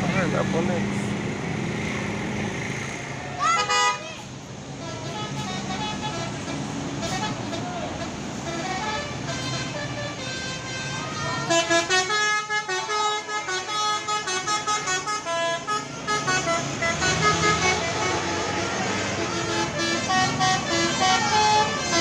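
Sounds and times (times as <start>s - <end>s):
multi-tone bus horn melody: 3.4s - 22.0s.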